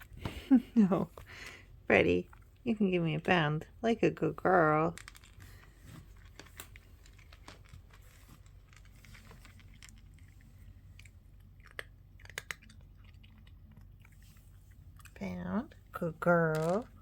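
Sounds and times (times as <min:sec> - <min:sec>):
cat chewing: 0:05.0 - 0:15.9.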